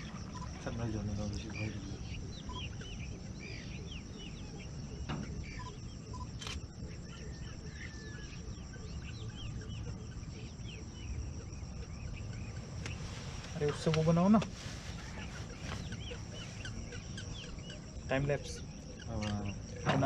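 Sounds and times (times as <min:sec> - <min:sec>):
water birds calling: 0:00.0 - 0:20.0.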